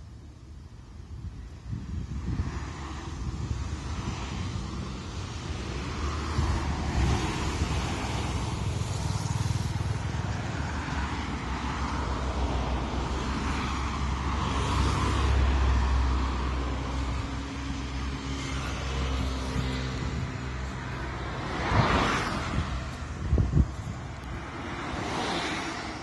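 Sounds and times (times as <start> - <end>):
road traffic rumble: 0.0 - 26.0.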